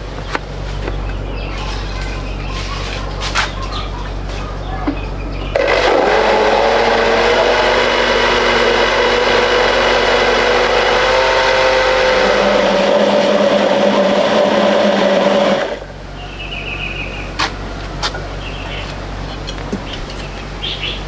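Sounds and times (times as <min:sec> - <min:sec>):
small electric motor running: 0:05.5 - 0:15.8.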